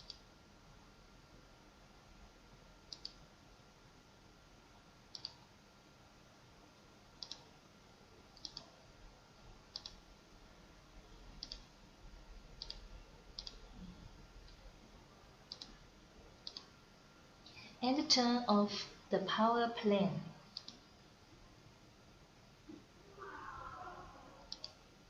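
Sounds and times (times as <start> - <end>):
faint computer mouse clicks: 2.9 - 3.2, 5.1 - 5.4, 7.2 - 7.4, 9.7 - 10.0, 20.6 - 20.8, 24.5 - 24.8.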